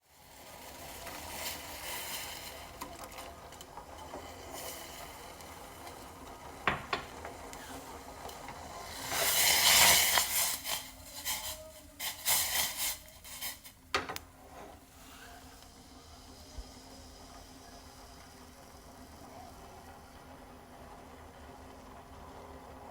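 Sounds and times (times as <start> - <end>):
milk tea boiling in a pan: 0.0 - 22.9
clicks and knocks: 13.9 - 14.3.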